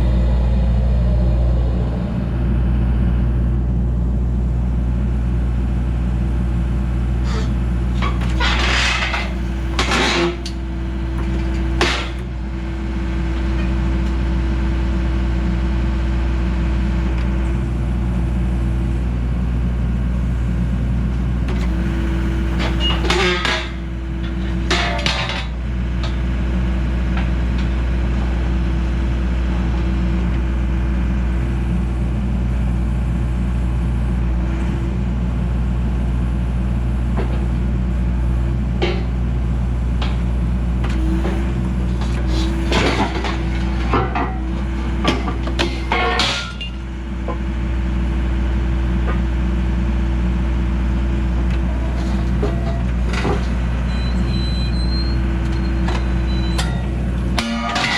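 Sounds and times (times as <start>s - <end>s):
hydraulic whine: 0.0s - 3.4s, 7.2s - 15.4s, 21.5s - 26.9s, 40.7s - 48.0s, 51.1s - 57.9s
diesel engine running: 0.0s - 57.9s.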